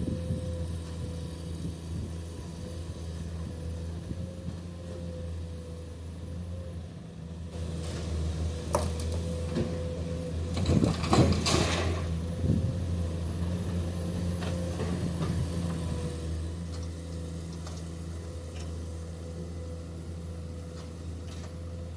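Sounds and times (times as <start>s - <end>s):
excavator diesel engine running: 0.0s - 21.9s.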